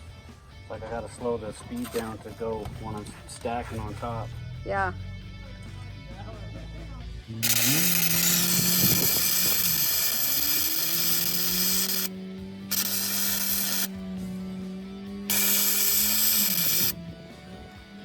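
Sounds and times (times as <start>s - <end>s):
welding arc hissing and crackling: 7.4s - 12.1s, 12.7s - 13.9s, 15.3s - 17.0s
steady low hum: 7.4s - 18.0s.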